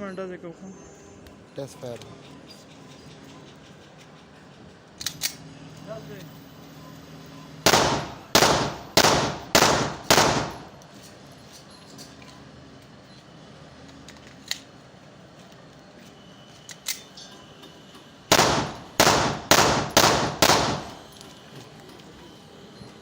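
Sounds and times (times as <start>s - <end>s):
gunshots echoing: 7.6s - 10.8s, 18.3s - 21.1s.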